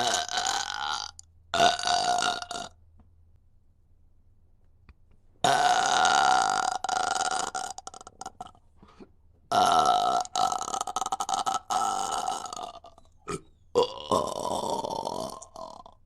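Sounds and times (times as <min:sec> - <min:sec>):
woman burping: 0:00.0 - 0:02.7, 0:05.4 - 0:08.6, 0:09.5 - 0:15.9.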